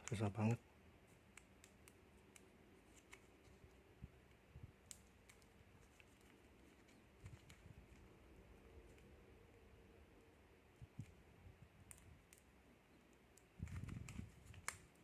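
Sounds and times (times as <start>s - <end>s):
plastic snack packets handled: 1.2s - 9.2s.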